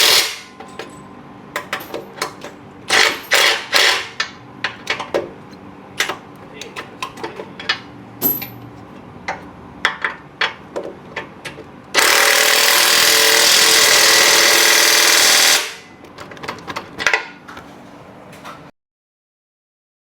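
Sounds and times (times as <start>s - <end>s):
power tool running: 0.0s - 0.5s, 2.9s - 4.2s, 11.9s - 15.9s
tools clicking and knocking: 0.6s - 11.7s, 16.0s - 17.7s.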